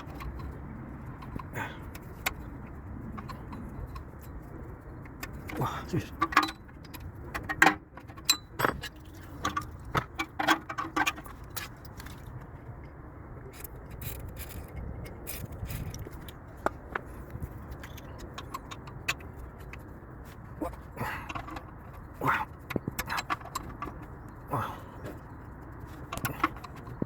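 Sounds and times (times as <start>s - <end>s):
low background rumble: 0.0s - 27.0s.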